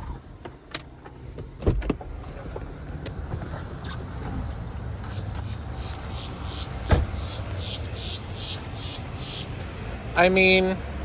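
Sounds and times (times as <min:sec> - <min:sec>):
car engine rumbling: 0:00.0 - 0:11.0
heavy thumps: 0:06.8 - 0:07.2.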